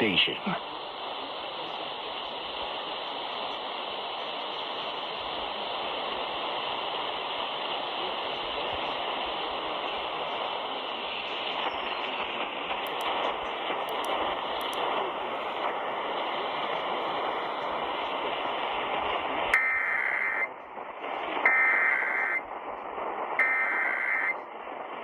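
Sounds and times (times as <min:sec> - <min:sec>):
radio static hiss: 0:00.0 - 0:25.0
faint clicks: 0:12.8 - 0:14.9.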